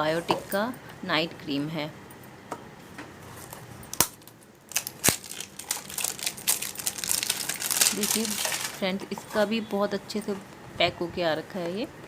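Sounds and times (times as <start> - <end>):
bubble wrap crinkling: 3.4 - 9.5.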